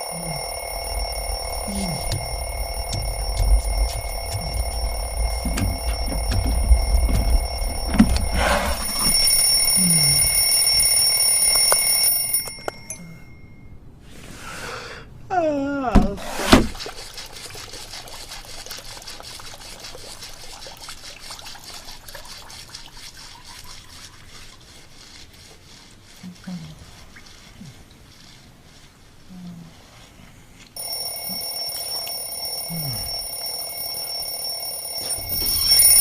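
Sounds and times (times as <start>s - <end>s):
alarm clock ringing: 0.0s - 13.8s, 30.8s - 36.0s.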